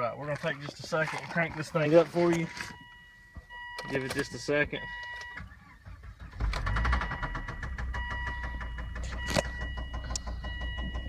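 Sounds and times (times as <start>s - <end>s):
car engine knocking: 5.4s - 11.0s.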